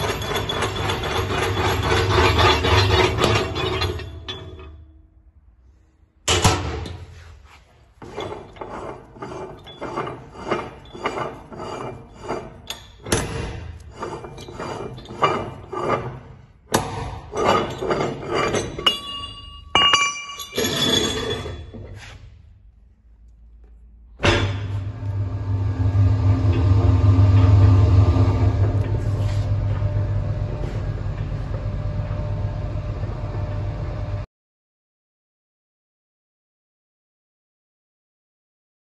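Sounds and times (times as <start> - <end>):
metallic rings: 0.0 - 5.1, 17.3 - 21.8
metal parts clinking: 17.7 - 21.7.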